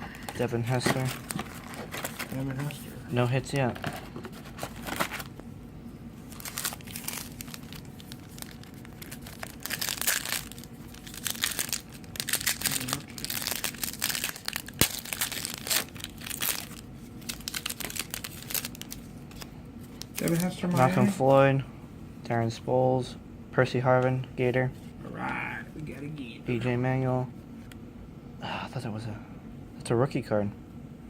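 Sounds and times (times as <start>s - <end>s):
foil wrappers crinkling: 0.1s - 5.4s, 6.2s - 21.2s.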